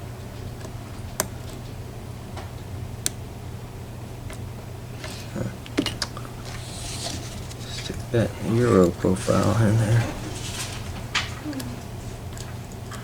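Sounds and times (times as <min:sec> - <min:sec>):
steady low hum: 0:00.0 - 0:13.0
handling rustle: 0:04.9 - 0:12.2.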